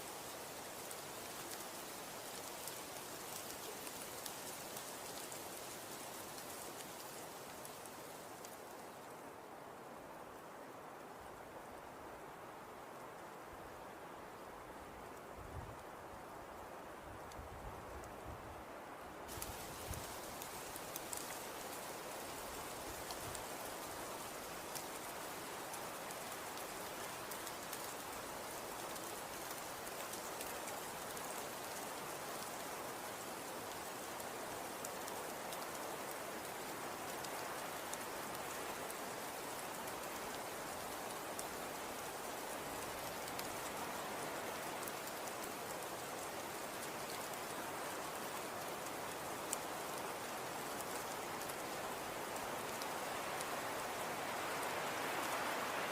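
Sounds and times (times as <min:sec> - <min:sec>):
wind and blowing snow: 0:00.0 - 0:55.9
faint ticks: 0:17.2 - 0:18.2, 0:19.3 - 0:55.6.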